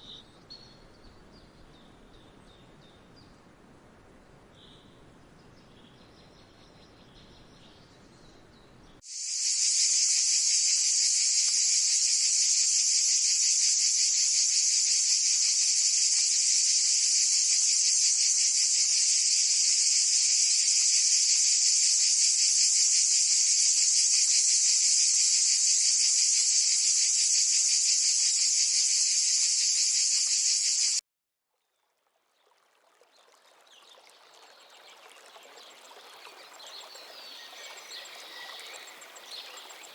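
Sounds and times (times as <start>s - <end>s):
insect buzzing: 9.1s - 31.0s.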